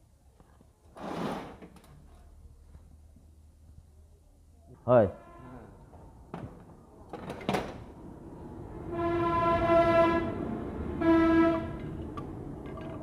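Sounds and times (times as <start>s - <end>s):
horn blasts: 8.9s - 12.0s.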